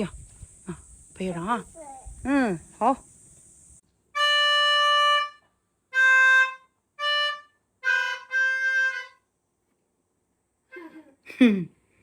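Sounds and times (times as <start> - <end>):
reedy harmonica-like tune: 4.1 - 9.3.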